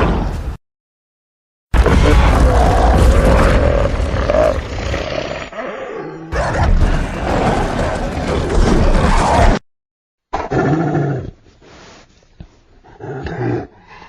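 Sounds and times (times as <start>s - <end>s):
monster growling roars: 1.8s - 9.6s.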